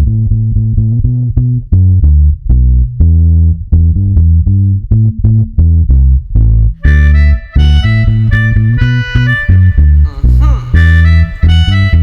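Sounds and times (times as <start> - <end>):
reggae bass line: 0.0 - 12.0
keyboard: 6.8 - 12.0.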